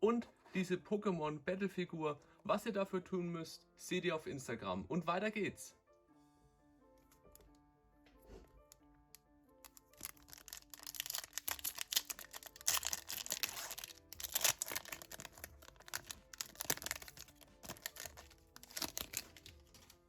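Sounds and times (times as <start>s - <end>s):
background music: 0.0s - 20.0s
packaging crinkling and tearing: 9.6s - 20.0s.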